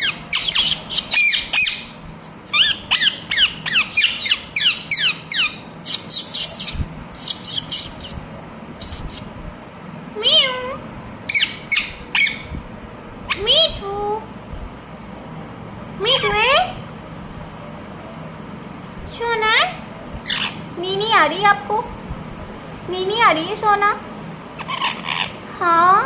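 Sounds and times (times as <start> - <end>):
parakeet shrill calls: 0.0 - 8.2, 8.8 - 9.3, 11.3 - 12.5, 20.2 - 20.6, 24.6 - 25.4.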